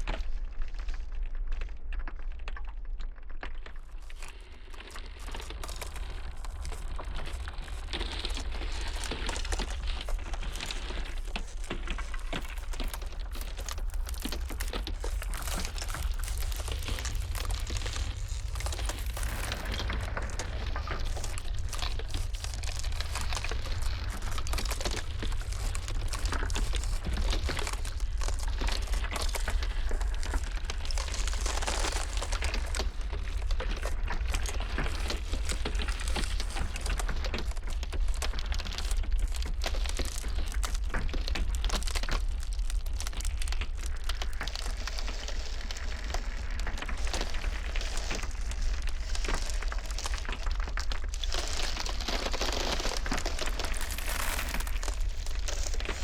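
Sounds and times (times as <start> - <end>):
ice cracking and crackling: 0.0 - 56.0
steady low rumble: 5.8 - 37.1.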